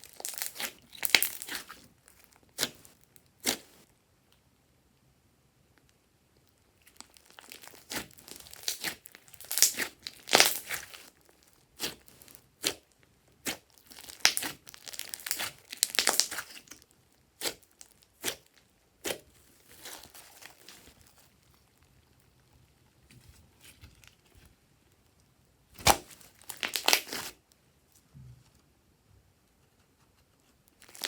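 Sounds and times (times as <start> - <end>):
slime popping and crackling: 0.0 - 3.8, 6.8 - 12.8, 13.4 - 16.8, 17.4 - 22.1, 25.8 - 27.4, 30.8 - 31.0
squishy slime crackling: 0.0 - 3.8, 6.8 - 27.5, 30.7 - 31.0.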